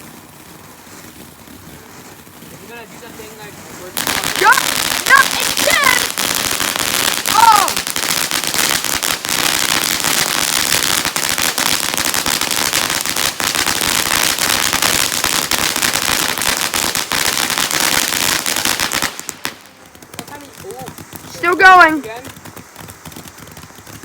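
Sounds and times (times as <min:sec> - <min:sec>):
ground firework hissing and crackling: 0:00.0 - 0:24.0.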